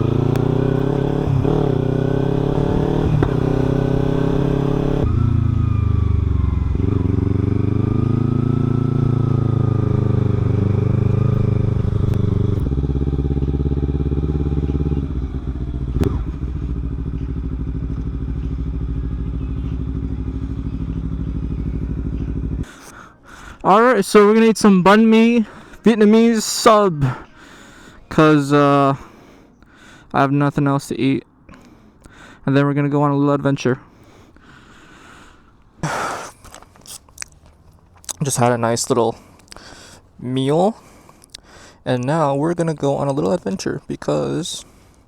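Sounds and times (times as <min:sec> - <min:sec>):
motorcycle engine running: 0:00.0 - 0:22.8.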